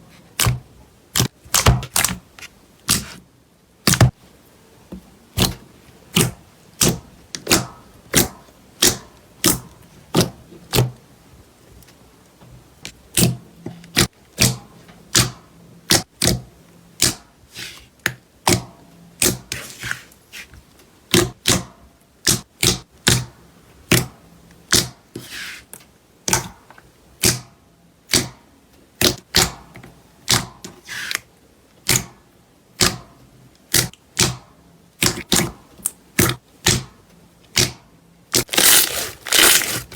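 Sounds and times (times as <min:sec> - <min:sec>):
slime crackling: 0:38.4 - 0:39.9.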